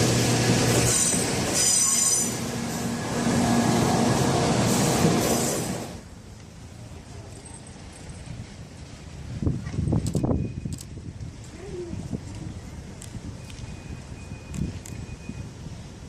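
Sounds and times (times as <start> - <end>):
train running past: 0.0 - 9.4
high wheel squeal: 0.7 - 2.4.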